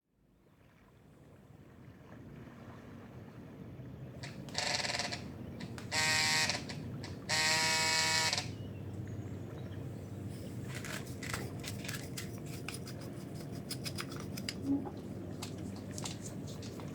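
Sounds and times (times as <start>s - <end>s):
electric buzzing: 4.2s - 8.6s
steady low hum: 4.2s - 16.9s.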